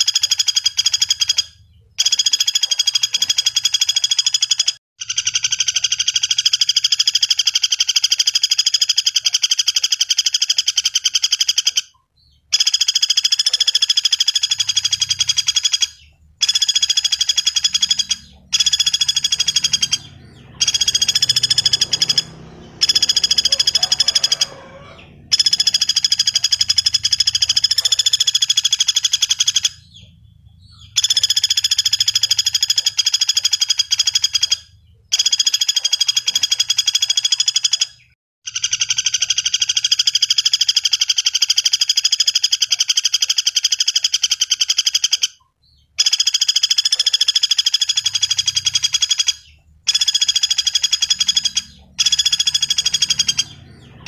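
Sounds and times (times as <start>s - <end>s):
woodpecker rattling trills: 0.0s - 54.0s.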